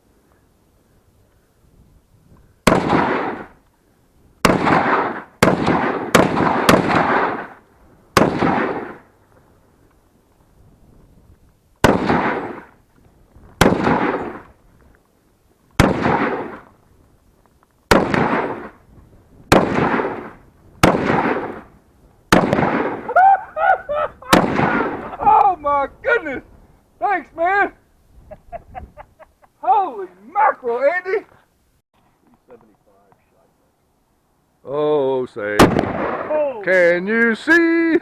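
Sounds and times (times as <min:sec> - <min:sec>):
rifle shots with echo: 0:02.6 - 0:03.5, 0:04.4 - 0:07.6, 0:08.2 - 0:09.0, 0:11.8 - 0:12.7, 0:13.6 - 0:14.5, 0:15.8 - 0:16.6, 0:17.9 - 0:18.8, 0:19.5 - 0:21.7, 0:22.3 - 0:23.1, 0:24.3 - 0:25.1, 0:35.6 - 0:36.5.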